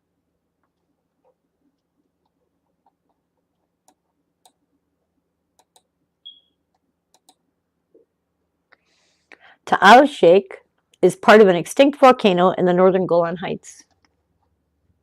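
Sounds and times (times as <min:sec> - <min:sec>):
computer mouse clicks: 0:05.6 - 0:05.9, 0:06.7 - 0:07.4
short high-pitched chirp: 0:06.2 - 0:06.5.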